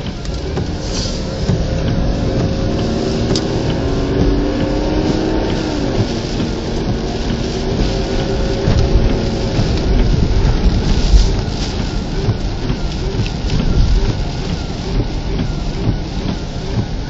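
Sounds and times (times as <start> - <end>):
car engine under load: 0.0 - 17.0
road and wind noise: 0.0 - 17.0.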